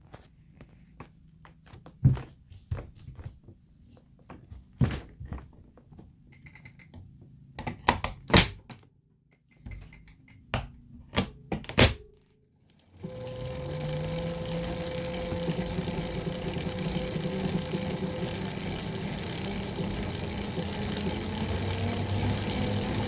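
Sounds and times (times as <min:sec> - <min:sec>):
bike trainer clicks and knocks: 0:13.0 - 0:23.0
steady hum rising in pitch: 0:13.0 - 0:23.0.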